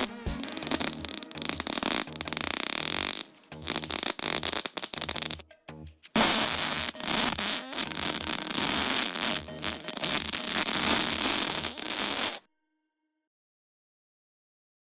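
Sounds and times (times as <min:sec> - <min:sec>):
fart sound effect: 0:06.2 - 0:12.4.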